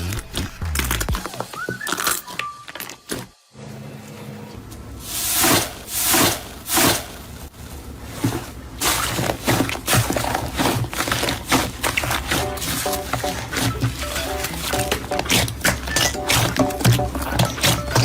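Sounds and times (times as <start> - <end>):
slime squishing: 5.6 - 18.0
background music: 12.3 - 18.0.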